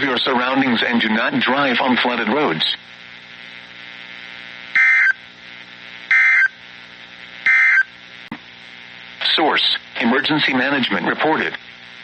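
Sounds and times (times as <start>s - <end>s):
low steady hum: 0.0s - 12.0s
raspy digital data tone bursts: 7.5s - 7.9s.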